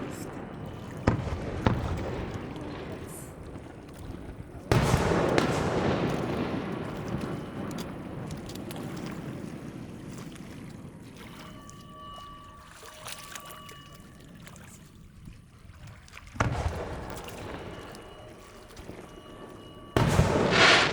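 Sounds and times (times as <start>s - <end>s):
firework crackling: 0.0s - 8.3s, 19.1s - 20.9s
firework shell booming: 0.0s - 8.3s, 16.4s - 18.2s, 18.9s - 20.9s
low rumble of shell bursts: 0.0s - 10.0s, 16.4s - 20.9s.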